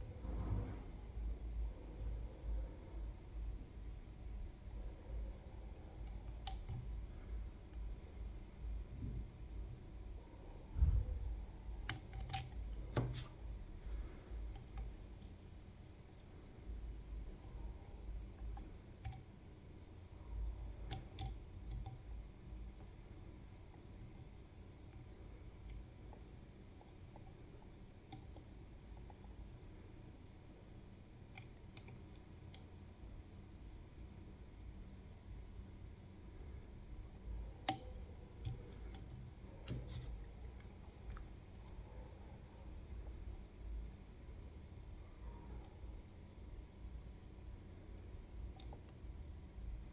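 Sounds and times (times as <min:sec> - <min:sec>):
faint high whine: 0:00.0 - 0:49.9
lock pick clicking in a lock: 0:11.9 - 0:13.3.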